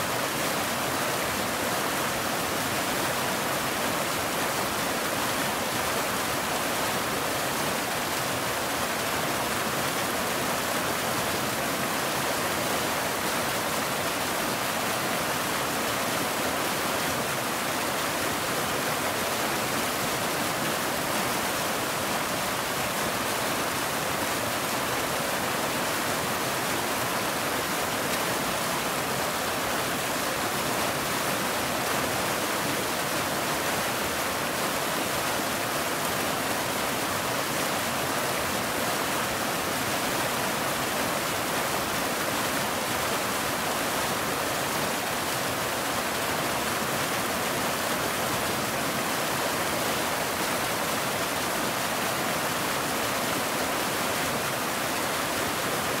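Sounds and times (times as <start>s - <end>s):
waterfall rushing: 0.0s - 56.0s.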